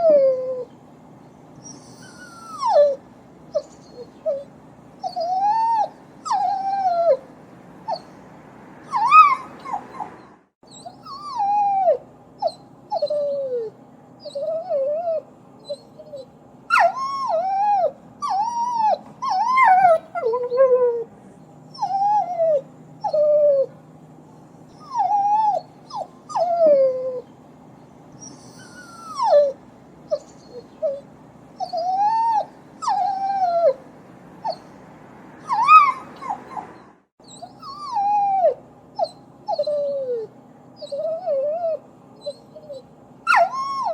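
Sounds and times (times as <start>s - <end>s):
dog whimpering and whining: 0.0s - 0.8s, 1.6s - 7.3s, 7.9s - 8.2s, 8.8s - 23.8s, 24.7s - 27.3s, 28.2s - 33.8s, 34.4s - 34.8s, 35.4s - 43.9s.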